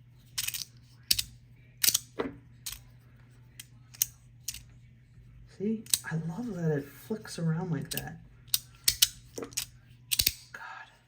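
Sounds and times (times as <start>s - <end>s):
magnetic fidget slider clicking: 7.9s - 10.5s.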